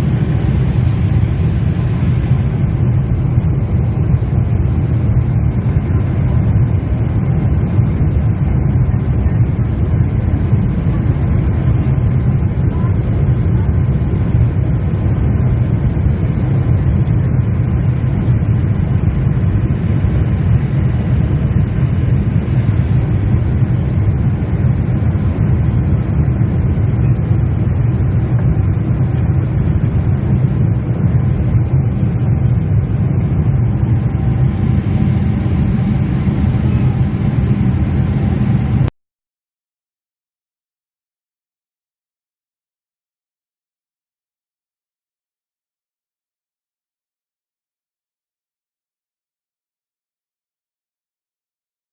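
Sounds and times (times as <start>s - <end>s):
airliner cabin engine rumble: 0.0s - 38.9s.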